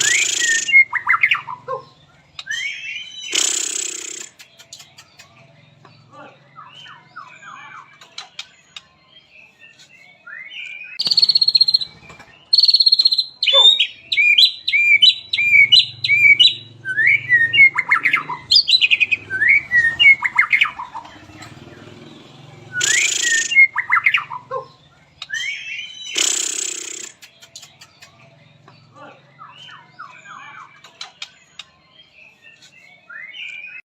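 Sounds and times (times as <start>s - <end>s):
bird singing whistled phrases: 0.0s - 1.6s, 2.4s - 5.3s, 10.2s - 20.9s, 22.7s - 24.5s, 25.2s - 28.2s.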